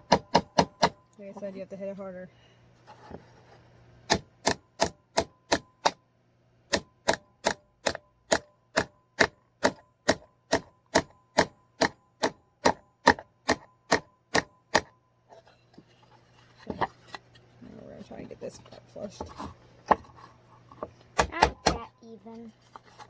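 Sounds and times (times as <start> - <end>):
hammer driving a nail into wood: 0.0 - 1.0, 4.1 - 6.0, 6.7 - 15.0, 21.2 - 21.8.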